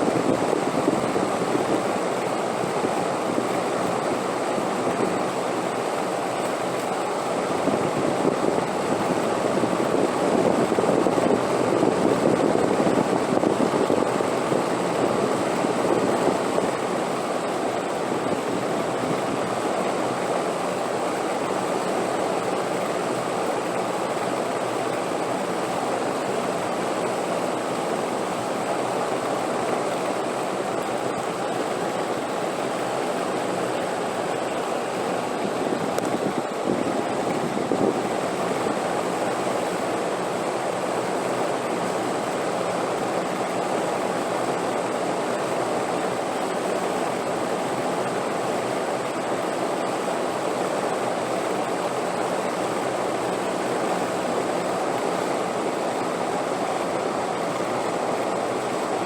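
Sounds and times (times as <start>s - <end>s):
wind blowing: 31.0s - 40.7s.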